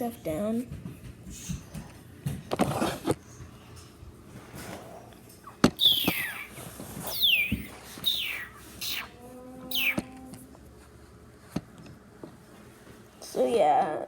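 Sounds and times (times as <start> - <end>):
high squeaky chirps: 5.4 - 10.2.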